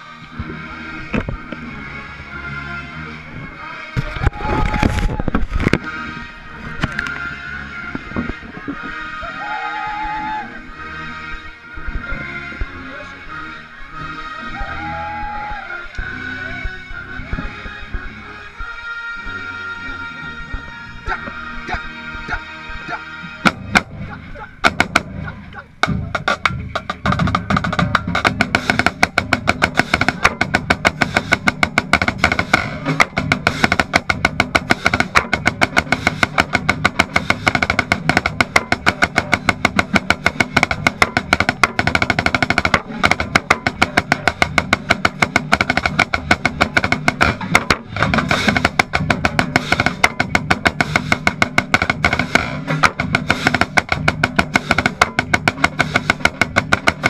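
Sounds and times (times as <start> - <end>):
marching band playing: 0.0 - 57.0
snare drum strokes and rolls: 23.4 - 24.0, 24.6 - 57.0.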